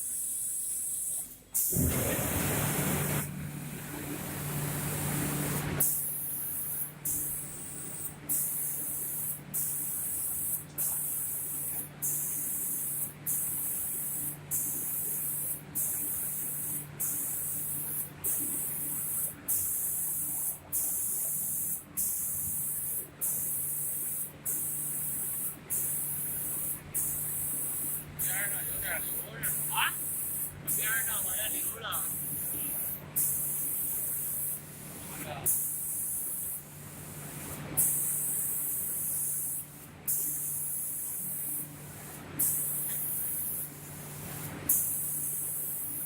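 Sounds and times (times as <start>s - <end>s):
low machine hum: 1.7s - 5.8s
high spray hiss: 25.7s - 34.6s.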